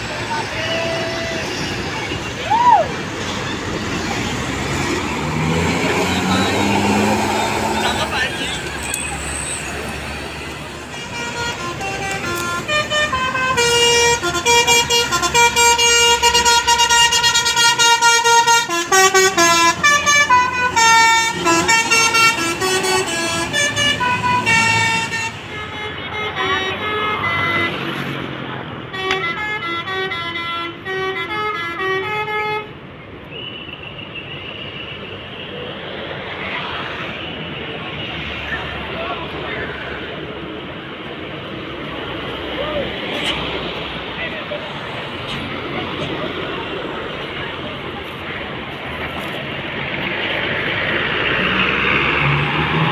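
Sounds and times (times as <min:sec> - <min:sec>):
musical bus air horn tune: 0:10.7 - 0:27.8, 0:28.9 - 0:32.8.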